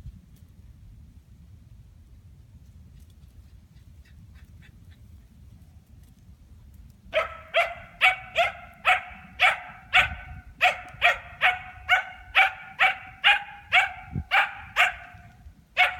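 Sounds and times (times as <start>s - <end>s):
dog barking: 7.2s - 15.9s.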